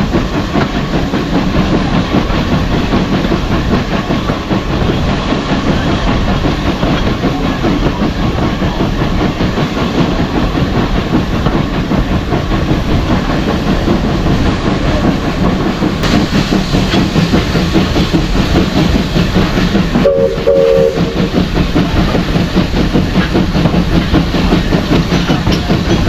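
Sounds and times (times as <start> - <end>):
train wheels rumbling on track: 0.0 - 26.0
two-note steam whistle: 20.0 - 21.3.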